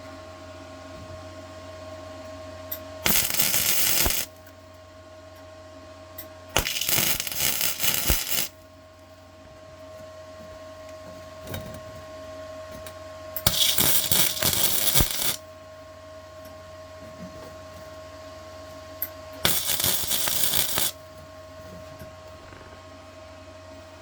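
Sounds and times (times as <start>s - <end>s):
welding arc crackling: 3.0s - 4.3s, 6.6s - 8.6s, 13.5s - 15.4s, 19.4s - 21.0s.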